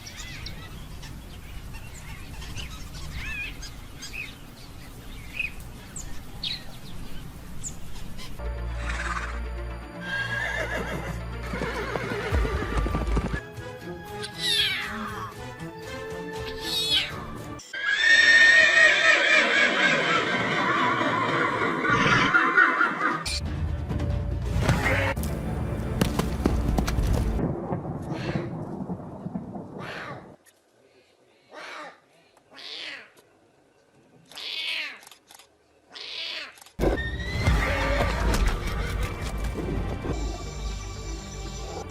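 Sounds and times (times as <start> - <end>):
background music: 8.4 - 17.7, 23.2 - 27.4, 36.8 - 41.9
horse whinnying: 10.0 - 13.4, 17.8 - 23.3, 36.0 - 39.2
lion cub mewing: 31.5 - 33.2, 34.3 - 35.2, 35.9 - 38.2.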